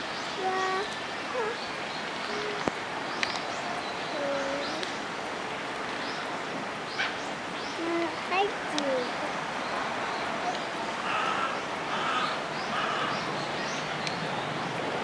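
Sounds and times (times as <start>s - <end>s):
steady background hiss: 0.0s - 15.0s
birds chirping and calling: 0.1s - 5.1s, 6.0s - 14.8s
faint people's voices: 0.4s - 5.0s, 7.8s - 9.5s.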